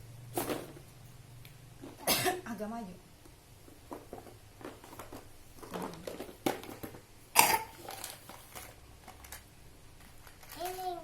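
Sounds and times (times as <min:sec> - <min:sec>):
plastic toy pieces clicking: 0:10.2 - 0:11.0.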